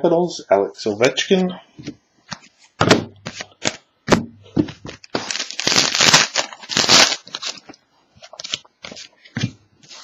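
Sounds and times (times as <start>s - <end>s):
wrapper crinkling: 5.0s - 9.1s.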